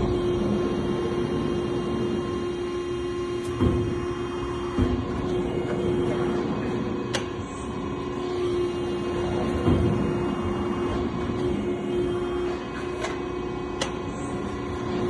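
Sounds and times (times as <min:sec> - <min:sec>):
hydraulic power unit humming: 0:00.0 - 0:15.0
thump: 0:03.5 - 0:04.1, 0:04.7 - 0:05.2, 0:09.6 - 0:10.1.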